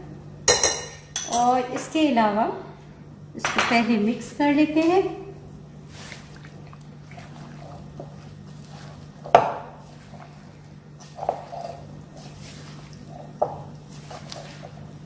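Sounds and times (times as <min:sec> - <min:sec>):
utensil clinking against bowl: 0:00.5 - 0:01.5
chicken mixed with flour: 0:05.9 - 0:15.0.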